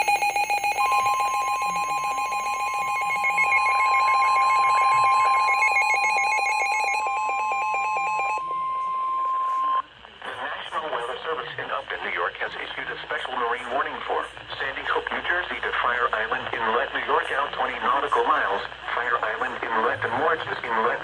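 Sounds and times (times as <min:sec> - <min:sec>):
fast warbling electronic alarm: 0:00.0 - 0:09.8
steady warning alarm tone: 0:00.0 - 0:09.9.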